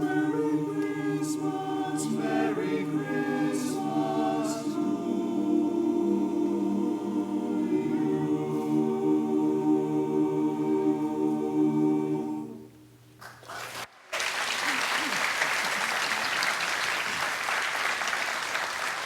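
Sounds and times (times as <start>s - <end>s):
barbershop chorus holding a chord: 0.0s - 12.8s
audience applauding: 13.2s - 19.0s.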